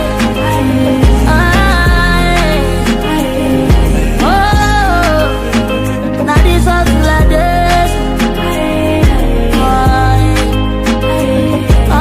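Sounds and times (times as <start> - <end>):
pop song with drums and singing: 0.0 - 12.0.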